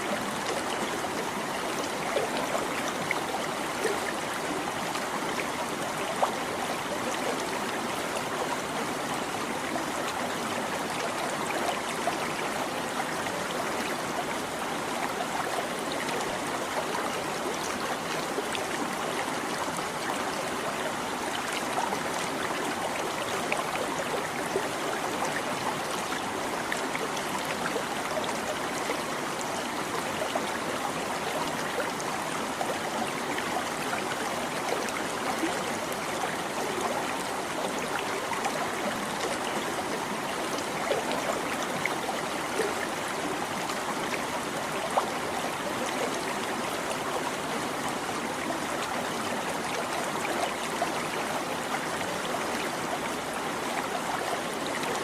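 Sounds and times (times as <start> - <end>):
stream babbling over stones: 0.0 - 55.0.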